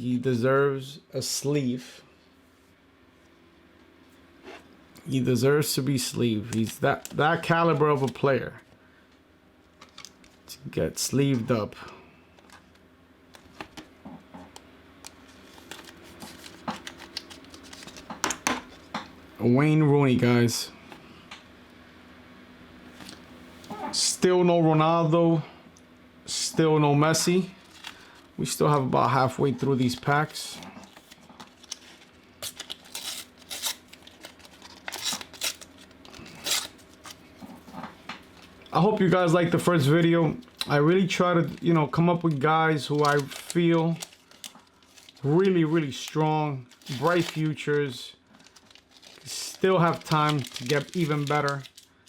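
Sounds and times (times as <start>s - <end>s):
paper packets rustling and tearing: 6.3s - 8.2s, 15.1s - 18.9s, 27.2s - 52.0s
soft handling noise: 11.2s - 19.2s, 27.2s - 39.2s.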